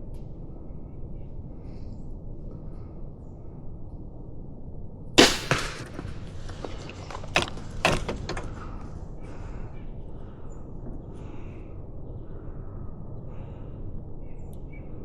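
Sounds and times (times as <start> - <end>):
crossbow shot crack: 5.2 - 8.4
snapping and crackling: 5.2 - 8.8.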